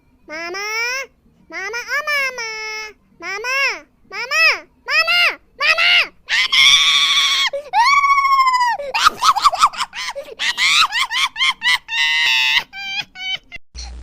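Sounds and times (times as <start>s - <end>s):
child laughing yelps: 0.3s - 13.6s
young child squealing: 5.6s - 11.0s.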